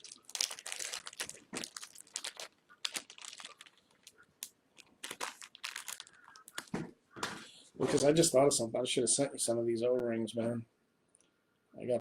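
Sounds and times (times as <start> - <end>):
crinkling plastic rustles: 0.0 - 8.3.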